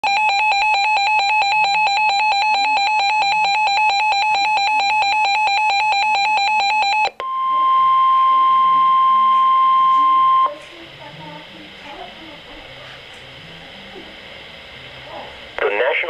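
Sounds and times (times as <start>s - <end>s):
steady warning alarm tone: 0.0s - 12.8s.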